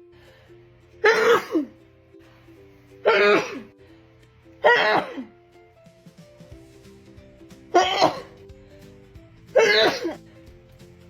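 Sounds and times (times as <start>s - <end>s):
background music held notes: 0.0s - 11.0s
woman sneezing: 1.0s - 1.7s, 3.0s - 3.7s, 4.6s - 5.3s, 7.8s - 8.4s, 9.6s - 10.2s.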